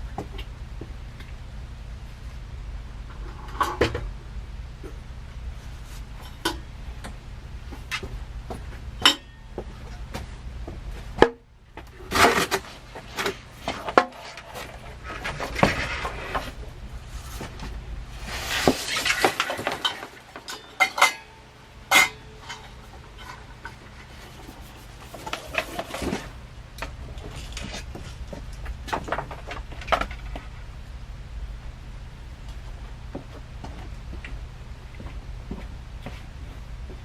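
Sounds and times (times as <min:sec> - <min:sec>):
low hum: 0:00.0 - 0:37.0
metal tools clinking and knocking: 0:19.1 - 0:23.5.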